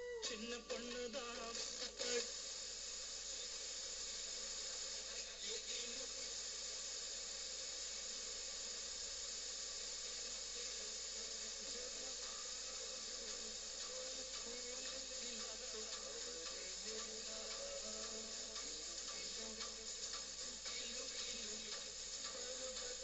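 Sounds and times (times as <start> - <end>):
radio static hiss: 0.0 - 23.0.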